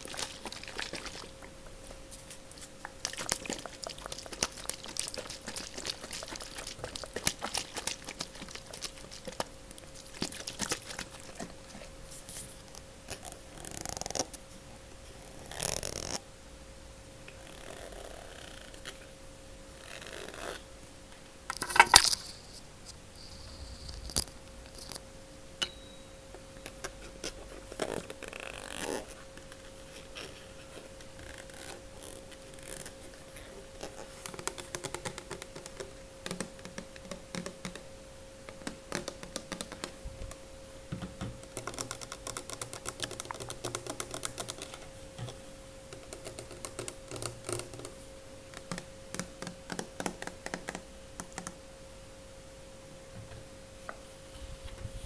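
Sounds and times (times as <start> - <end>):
fingernail tapping: 48.5 - 51.6.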